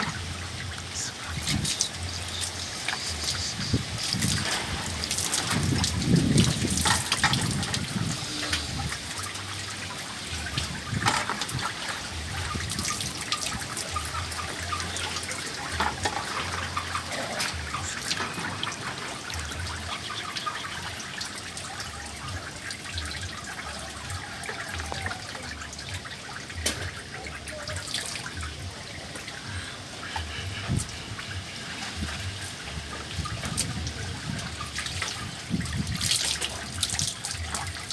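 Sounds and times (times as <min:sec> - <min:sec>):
wind buffeting microphone: 0:00.0 - 0:09.7, 0:10.3 - 0:15.0, 0:29.8 - 0:37.9
strong wind rushing: 0:03.5 - 0:09.0.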